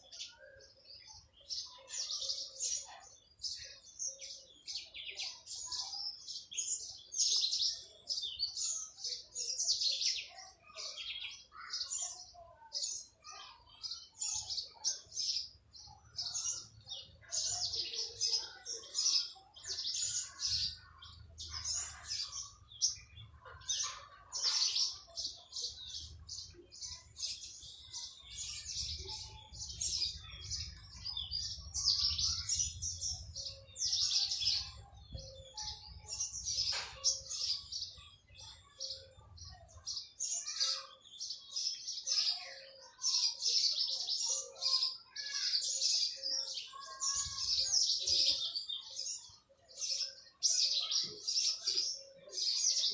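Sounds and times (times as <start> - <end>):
small birds chirping: 0.0 - 52.9.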